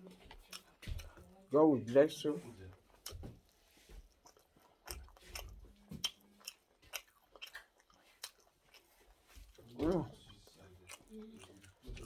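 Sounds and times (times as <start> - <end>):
chewing and crunching food: 0.0 - 12.0.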